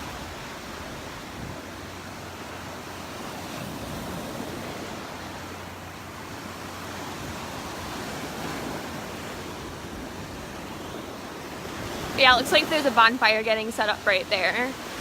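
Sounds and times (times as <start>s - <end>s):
waves breaking on a beach: 0.0s - 15.0s
wind: 0.0s - 15.0s.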